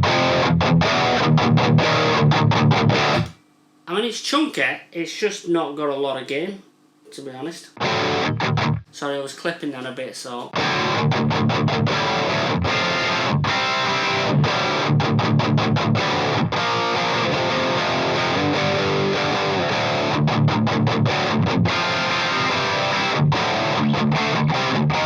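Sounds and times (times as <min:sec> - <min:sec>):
distorted electric guitar riffing: 0:00.0 - 0:03.4, 0:07.7 - 0:08.9, 0:10.5 - 0:25.0.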